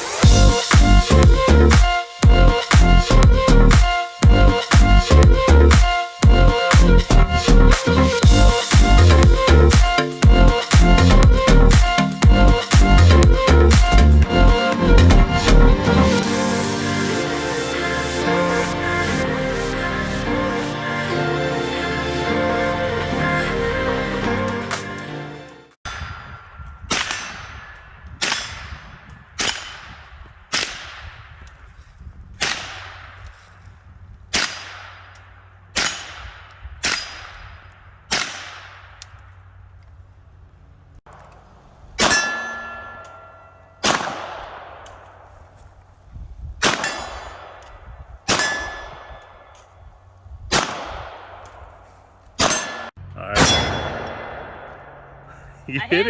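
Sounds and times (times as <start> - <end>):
steel target ringing clang: 25.9 - 30.0, 35.8 - 38.9, 42.0 - 44.2, 46.6 - 49.8, 52.4 - 55.3
handgun shots: 26.9 - 31.2, 32.4 - 33.2, 34.3 - 35.2, 35.8 - 37.5, 38.1 - 39.2, 43.8 - 45.2, 46.6 - 49.6, 50.5 - 51.7, 52.4 - 55.2.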